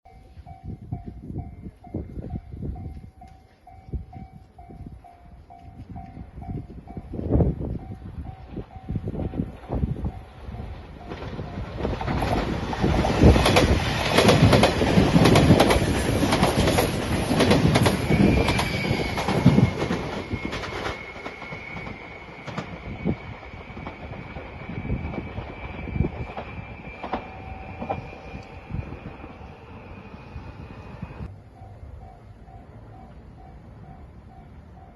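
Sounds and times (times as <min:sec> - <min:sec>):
train wheels clacking over rail joints: 0:11.0 - 0:22.8.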